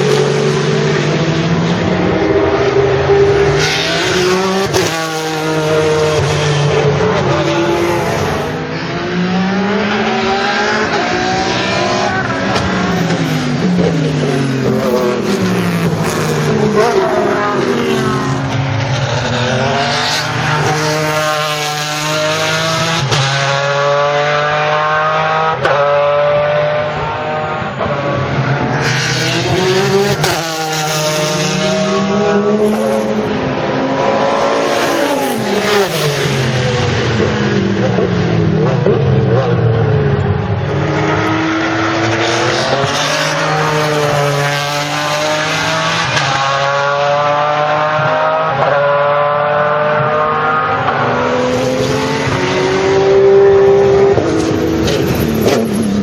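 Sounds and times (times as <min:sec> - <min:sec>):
cars passing by: 0:00.0 - 0:56.0
race car engines revving: 0:00.0 - 0:56.0.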